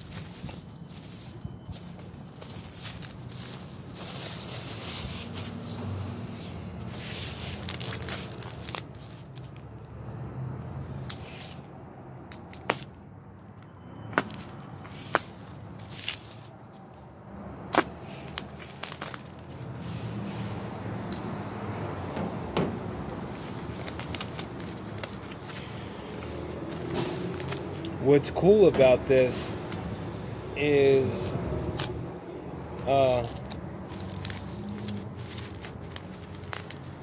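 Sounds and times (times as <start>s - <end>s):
packaging rustling and crinkling: 0.0s - 6.2s, 6.8s - 9.8s, 14.1s - 17.0s, 17.8s - 20.6s, 23.1s - 29.1s, 32.6s - 37.0s.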